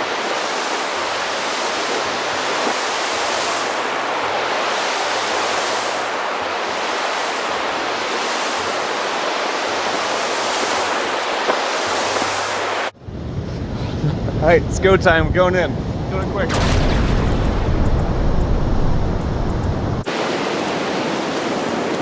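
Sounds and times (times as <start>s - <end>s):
ocean surf breaking on beach: 0.0s - 13.0s, 20.0s - 22.0s.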